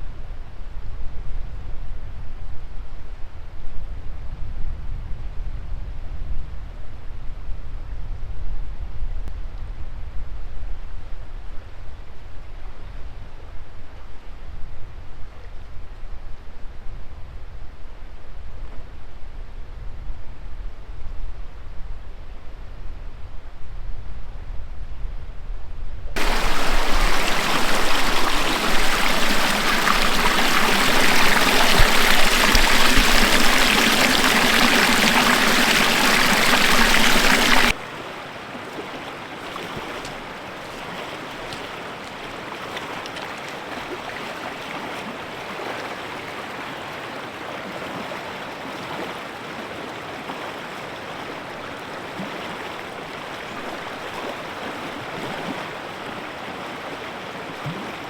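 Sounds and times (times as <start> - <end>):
rushing river water: 26.2 - 58.0.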